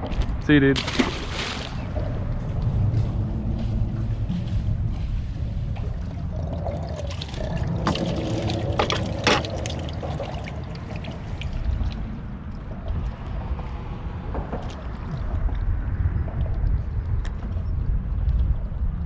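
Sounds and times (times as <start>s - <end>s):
steady low rumble: 0.0s - 19.0s
sharp splashes or knocks: 0.8s - 2.0s, 5.7s - 12.1s
water trickling and splashing: 0.8s - 2.9s, 4.8s - 13.6s.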